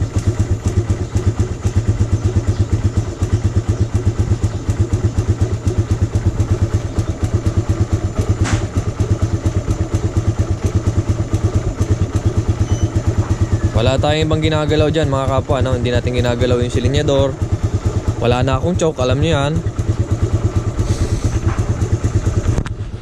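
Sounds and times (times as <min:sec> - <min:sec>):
motorcycle engine idling: 0:00.0 - 0:23.0.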